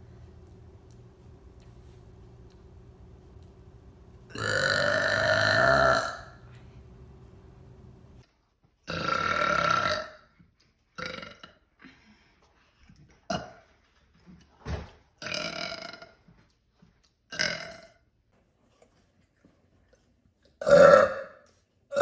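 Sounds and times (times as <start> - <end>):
woman burping: 4.3 - 6.4.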